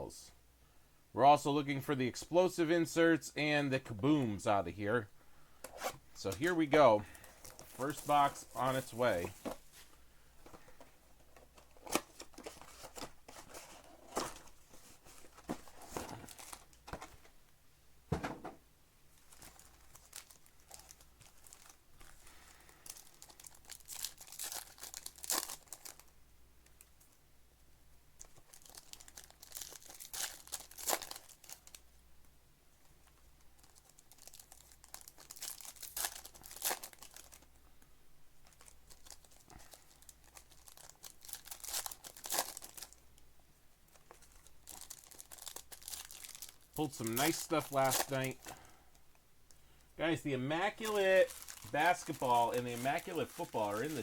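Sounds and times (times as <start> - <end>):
plastic wrapping torn and crinkled: 19.2 - 22.1, 22.8 - 26.1, 28.2 - 31.8, 33.1 - 37.6, 38.4 - 43.0, 43.9 - 48.6, 50.5 - 54.0.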